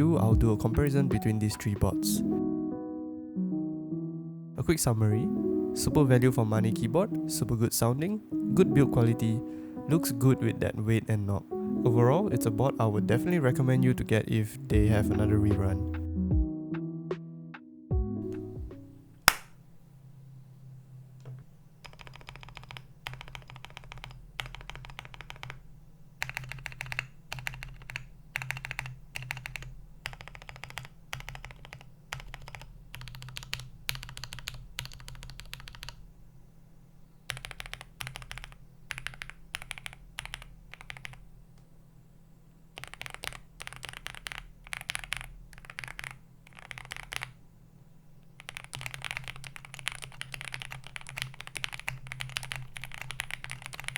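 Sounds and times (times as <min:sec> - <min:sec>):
mechanical keyboard typing: 0:21.8 - 0:36.0, 0:37.3 - 0:41.2, 0:42.8 - 0:47.4, 0:48.4 - 0:53.9.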